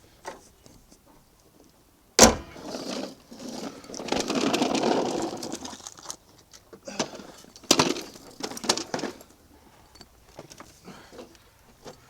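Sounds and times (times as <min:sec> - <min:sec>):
rustling clattering handling noise: 0:00.2 - 0:12.0
sharp bang: 0:02.2 - 0:02.6.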